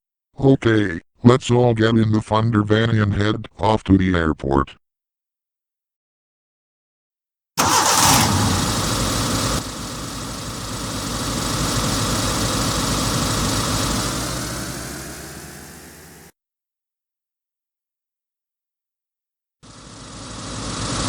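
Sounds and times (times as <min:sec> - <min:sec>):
van engine running: 0:07.6 - 0:16.3, 0:19.7 - 0:21.0.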